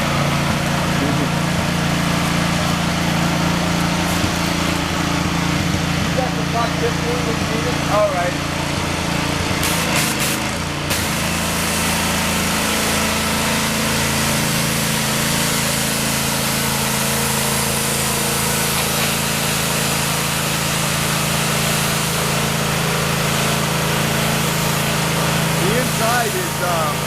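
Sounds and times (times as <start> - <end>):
pressure washer engine humming: 0.0 - 27.0
high hiss of water spray: 9.6 - 27.0.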